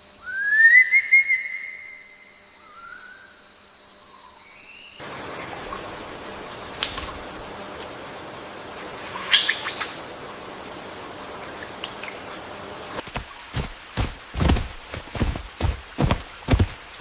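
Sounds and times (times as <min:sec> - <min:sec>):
background hiss: 0:00.0 - 0:17.0
birds chirping: 0:04.8 - 0:17.0.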